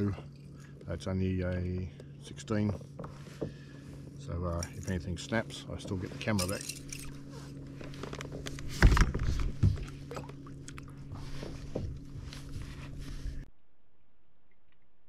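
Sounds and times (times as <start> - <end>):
steady low hum: 0.0 - 15.0
fishing tackle clicks and knocks: 4.5 - 10.9.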